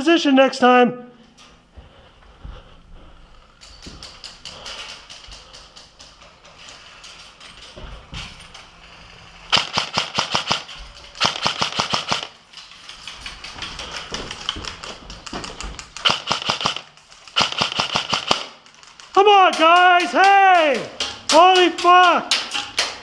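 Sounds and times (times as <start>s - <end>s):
airsoft rifles firing bursts: 9.5s - 12.4s, 15.8s - 20.7s.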